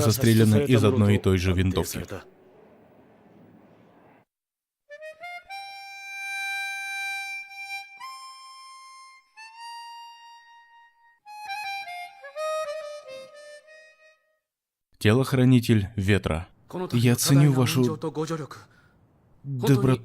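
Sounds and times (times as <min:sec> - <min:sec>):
slow solo wind instrument melody: 0:04.9 - 0:14.4.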